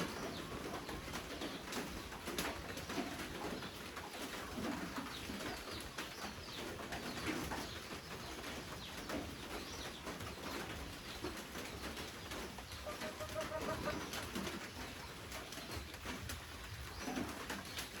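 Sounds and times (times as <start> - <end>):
steady rain pattering: 0.0 - 18.0
pigeon cooing: 12.8 - 14.5.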